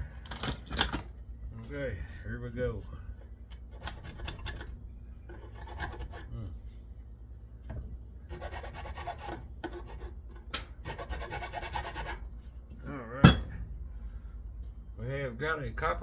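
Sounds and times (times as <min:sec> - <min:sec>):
metal parts scraping and clinking: 0:00.2 - 0:01.2
rasping scrapes: 0:05.3 - 0:06.4, 0:08.3 - 0:12.3.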